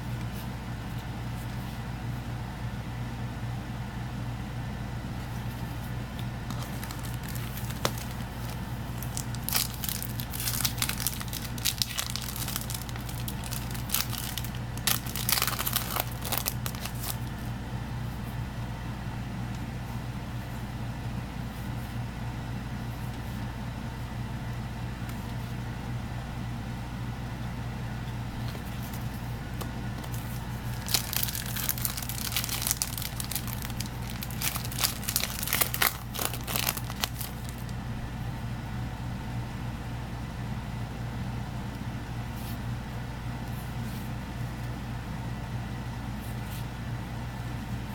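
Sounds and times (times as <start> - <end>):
steady low hum: 0.0 - 47.9
foil wrappers crinkling and tearing: 6.5 - 17.3, 30.0 - 37.7.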